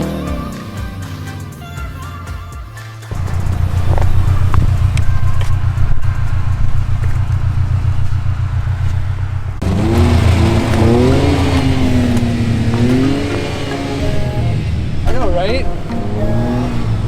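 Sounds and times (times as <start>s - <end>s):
car engine revving: 0.0s - 2.2s, 3.1s - 17.0s.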